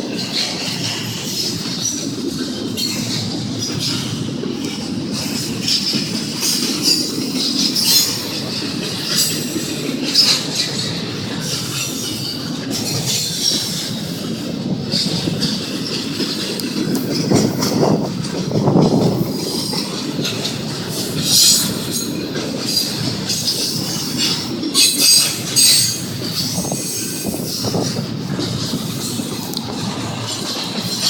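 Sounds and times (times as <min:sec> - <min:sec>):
freight train wheels rumbling on rail: 0:00.0 - 0:31.0
wheel squeal: 0:22.7 - 0:28.0.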